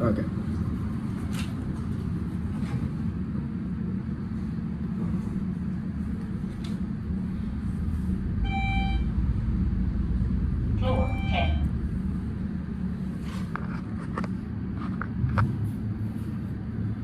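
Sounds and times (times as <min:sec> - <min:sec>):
elevator car low rumble: 0:00.0 - 0:17.0
electronic arrival chime: 0:08.5 - 0:09.1, 0:10.9 - 0:11.7.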